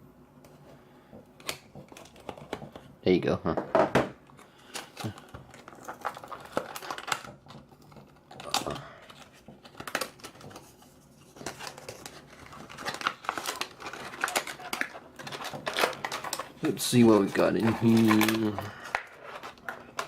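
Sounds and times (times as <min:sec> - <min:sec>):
packaging crinkling and tearing: 0:04.4 - 0:20.0.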